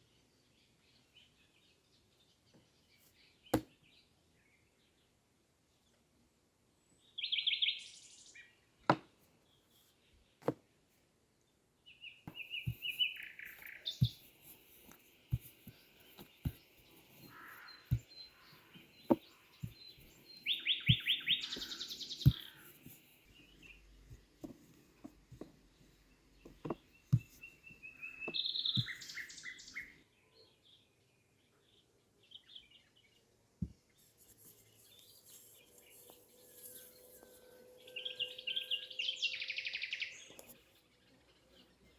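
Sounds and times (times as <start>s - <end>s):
songbirds chirping and trilling: 0.0s - 41.9s.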